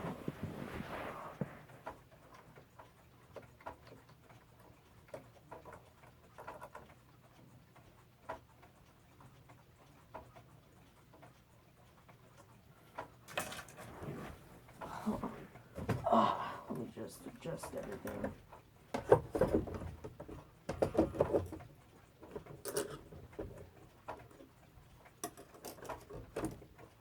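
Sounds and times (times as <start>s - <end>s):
handling noise: 0.0s - 1.6s
pendulum clocks ticking: 1.6s - 27.0s
low steady hum: 13.3s - 23.8s.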